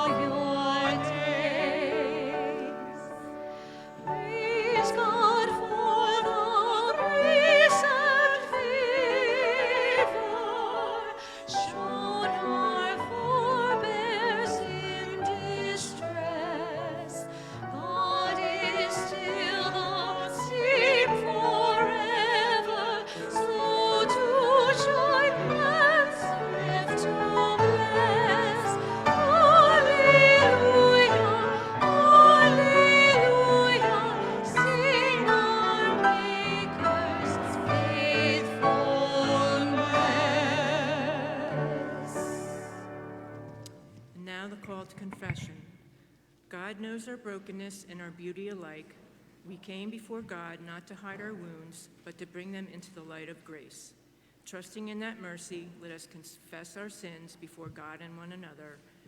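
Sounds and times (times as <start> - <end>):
person singing with vibrato: 0.0 - 43.2.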